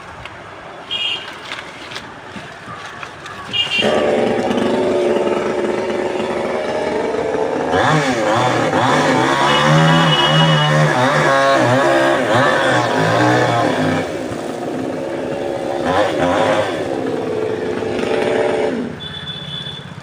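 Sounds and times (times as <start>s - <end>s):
small petrol engine revving: 3.5s - 20.0s.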